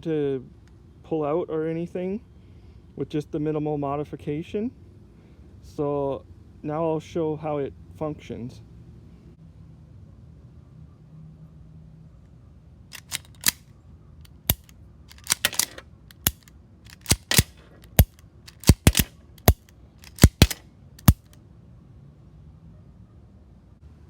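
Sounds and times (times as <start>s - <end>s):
pistol slide racking clacks: 12.9s - 13.6s, 14.3s - 21.4s.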